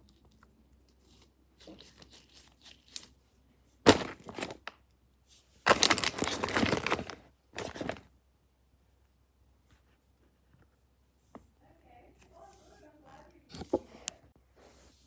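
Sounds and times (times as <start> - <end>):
crinkling crushing handling noises: 0.0 - 4.9, 5.5 - 8.2.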